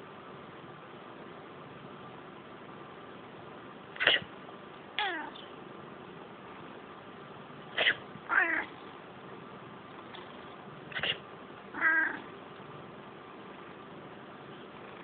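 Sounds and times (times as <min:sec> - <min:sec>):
person sneezing: 0:04.0 - 0:04.3, 0:07.8 - 0:08.0, 0:11.0 - 0:11.2
cat meowing angrily: 0:05.0 - 0:05.4, 0:07.8 - 0:08.8, 0:11.7 - 0:12.3.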